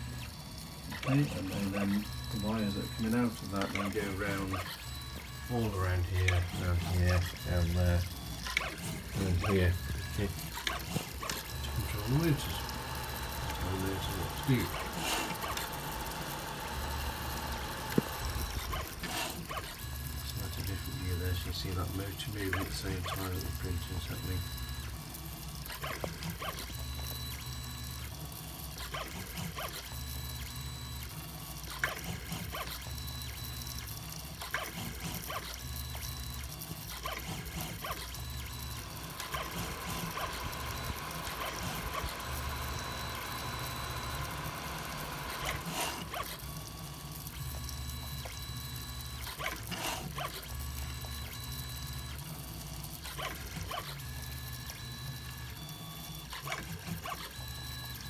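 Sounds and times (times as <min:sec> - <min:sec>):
stepper motors whining: 0:00.0 - 0:58.0
buzzy hissy motor sound: 0:10.1 - 0:20.2, 0:36.3 - 0:48.4, 0:49.1 - 0:50.9.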